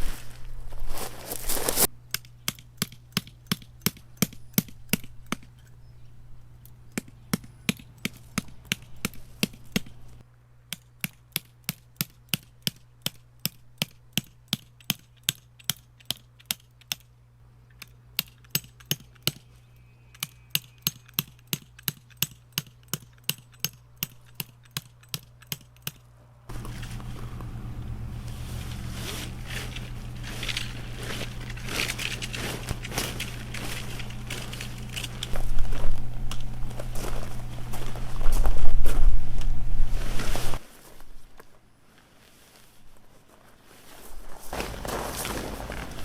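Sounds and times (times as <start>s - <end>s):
faint low hum: 23.8s - 42.0s.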